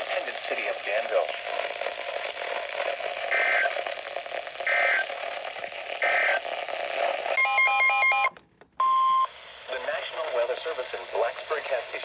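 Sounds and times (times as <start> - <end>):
radio hiss: 0.0 - 7.4.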